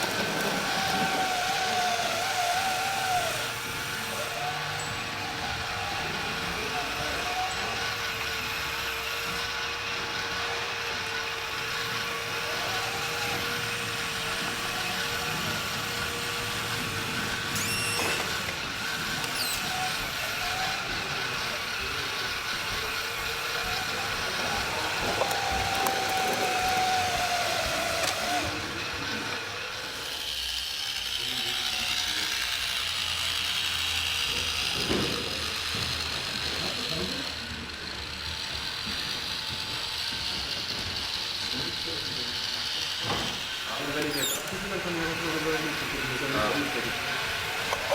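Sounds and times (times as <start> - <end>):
small electric motors whining: 0.0 - 47.9.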